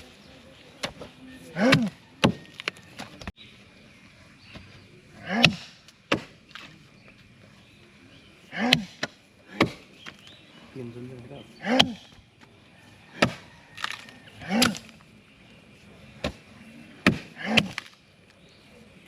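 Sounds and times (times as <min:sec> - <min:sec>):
worker grunting: 0:08.5 - 0:08.9.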